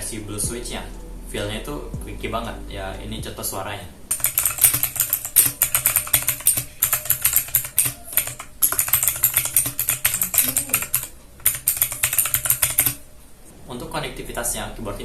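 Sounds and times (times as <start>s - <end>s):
mechanical keyboard typing: 4.1s - 13.0s.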